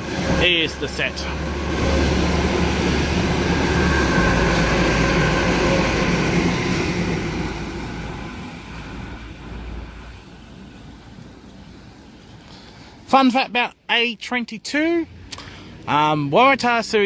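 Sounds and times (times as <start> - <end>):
electric train passing: 0.0 - 13.1.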